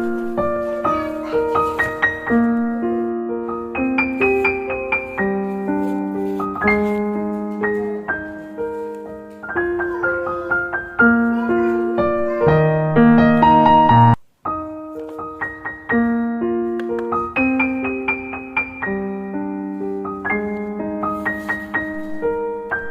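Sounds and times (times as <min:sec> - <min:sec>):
piano alarm-clock tune: 0:06.5 - 0:21.0.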